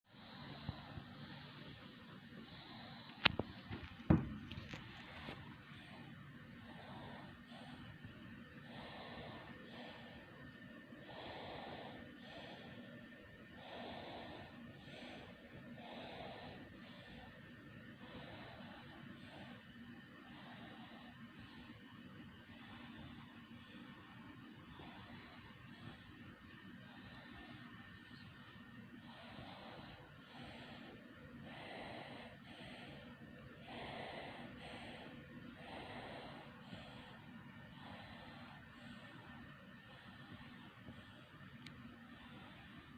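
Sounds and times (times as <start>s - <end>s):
baby snoring softly: 4.9s - 12.9s, 18.0s - 28.3s, 29.0s - 41.4s
baby snoring: 8.6s - 10.2s, 11.0s - 12.7s, 13.6s - 17.3s, 29.0s - 39.0s.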